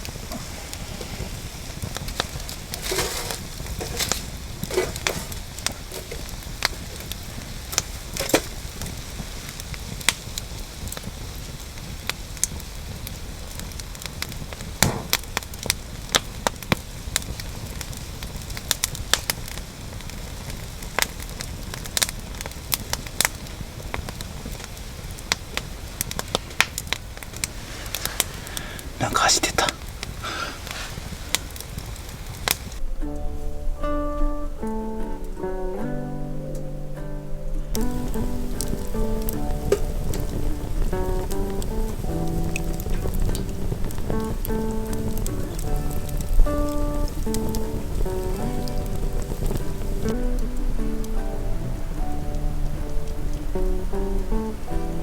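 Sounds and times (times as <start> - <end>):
fire popping: 0.0 - 55.0
wood campfire crackling: 0.0 - 55.0.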